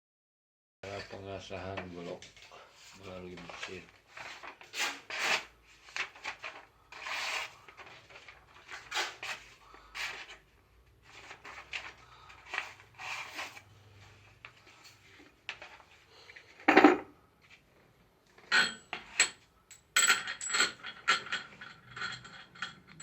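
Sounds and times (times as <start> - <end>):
scraping and rubbing strokes: 1.8 - 16.1.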